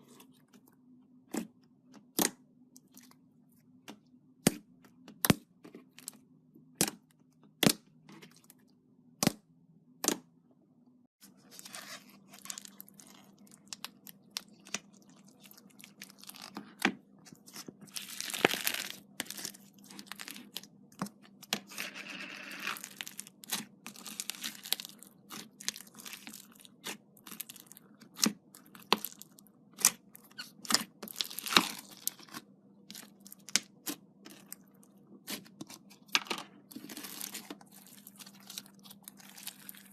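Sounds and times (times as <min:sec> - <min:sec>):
slime popping and crackling: 0:17.9 - 0:20.6.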